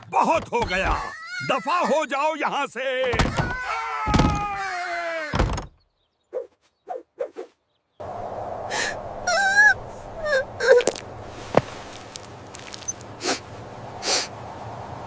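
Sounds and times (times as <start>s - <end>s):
short squeaky cries: 0.7s - 2.2s, 3.2s - 5.4s.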